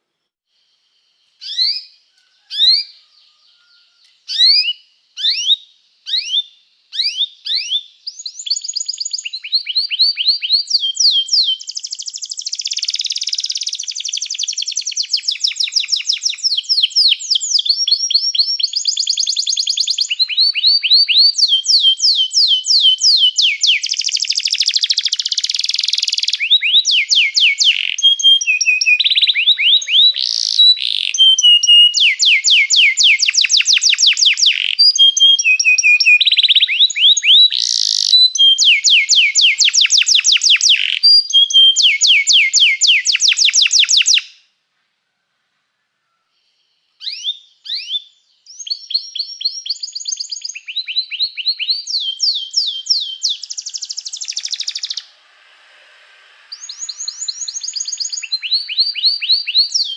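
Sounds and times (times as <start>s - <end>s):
canary singing: 1.4s - 44.4s, 47.0s - 55.6s, 56.2s - 59.9s.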